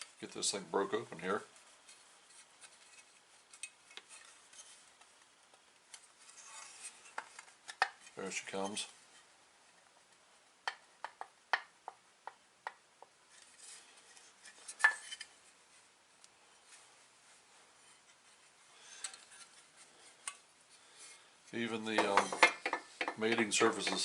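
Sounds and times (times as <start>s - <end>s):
faint rustling: 13.2s - 24.0s.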